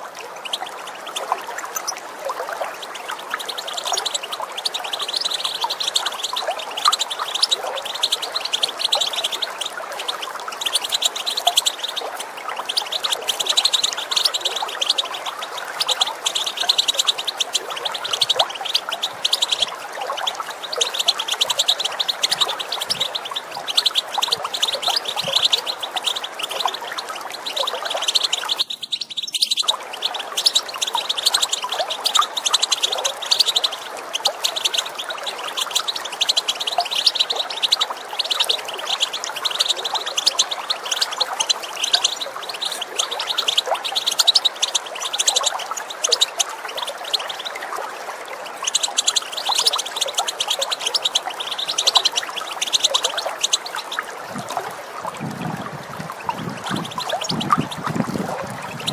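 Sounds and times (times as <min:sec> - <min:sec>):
finch twittering chatter: 0:00.0 - 0:47.7, 0:48.3 - 0:54.6, 0:55.2 - 0:58.9
running water rushing: 0:00.0 - 0:58.9.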